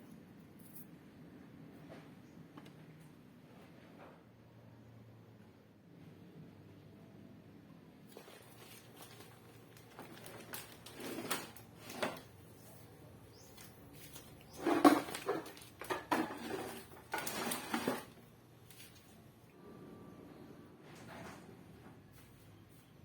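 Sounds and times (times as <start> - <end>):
household objects knocking and clattering: 14.6 - 18.2.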